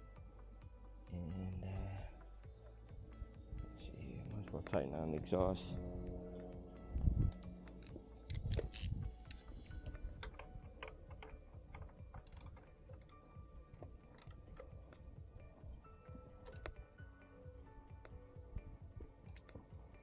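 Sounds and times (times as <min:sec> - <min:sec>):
ratchet clicking on bolts: 0:07.3 - 0:13.2.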